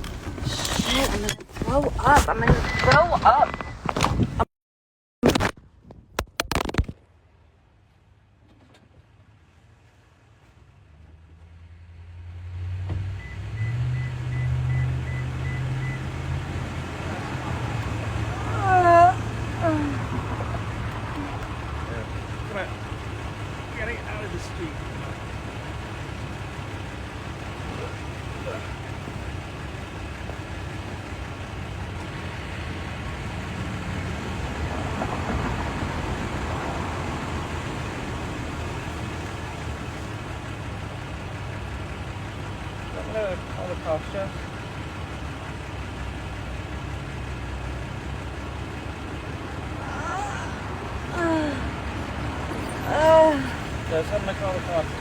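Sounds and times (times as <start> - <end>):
truck engine running: 0.0 - 4.4, 13.0 - 55.0
vehicle warning chime beeping: 0.9 - 3.9, 13.2 - 16.4.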